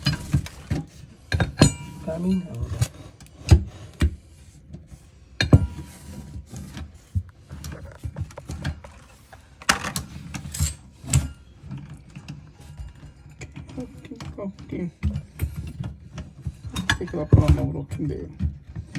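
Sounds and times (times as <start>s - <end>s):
metal wrenches clanking: 0.0s - 3.0s, 7.6s - 18.9s.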